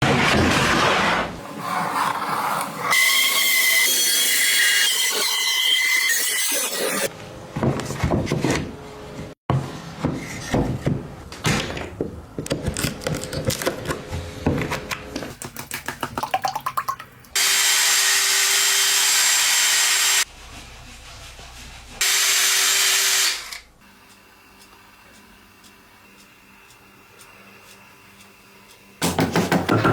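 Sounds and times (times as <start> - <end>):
power tool running: 17.4 - 20.2, 22.0 - 23.6
tools knocking and scraping wood: 29.0 - 29.9.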